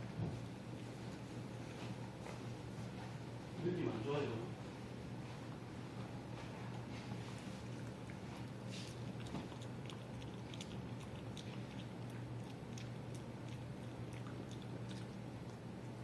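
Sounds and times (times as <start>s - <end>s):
dog chewing: 5.4s - 16.0s.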